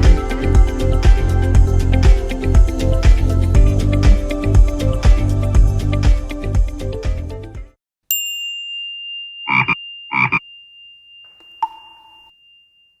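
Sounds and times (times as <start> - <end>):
music: 0.0 - 7.8
high bell-like ding: 8.1 - 13.0
click with lower ring: 8.2 - 13.0
short croaking blips: 9.5 - 10.4.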